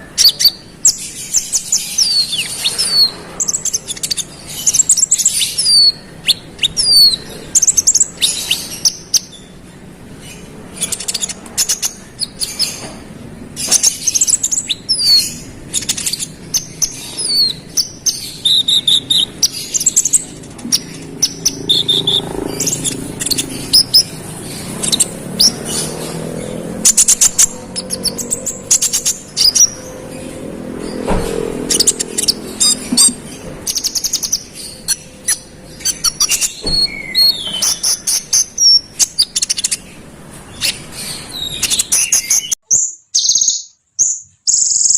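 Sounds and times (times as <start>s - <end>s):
songbird singing: 0.0s - 44.9s.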